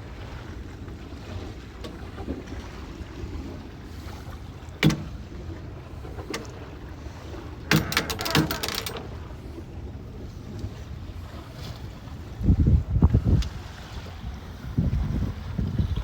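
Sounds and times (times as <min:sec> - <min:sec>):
rush of wind and water: 0:00.0 - 0:16.0
clicks and knocks: 0:04.8 - 0:05.2, 0:07.6 - 0:09.2.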